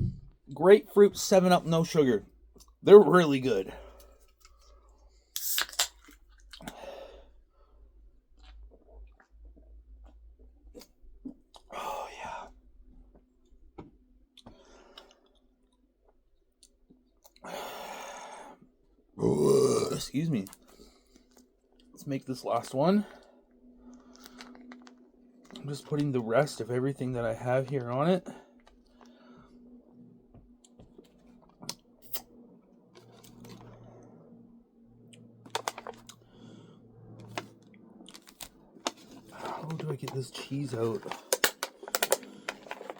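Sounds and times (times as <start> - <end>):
sipping from soda can: 5.4 - 6.1
plastic tray and packets clicking: 35.5 - 36.1, 38.1 - 42.9.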